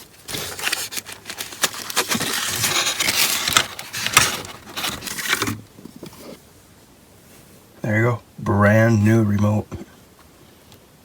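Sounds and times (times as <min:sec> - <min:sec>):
packaging rustling and crinkling: 0:00.0 - 0:06.4.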